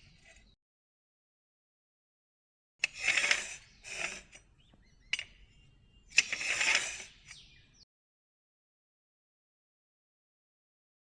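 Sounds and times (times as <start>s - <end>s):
hard parts clicking: 2.8s - 4.5s, 5.1s - 7.4s
short scraping strokes: 2.8s - 4.5s, 6.1s - 7.5s.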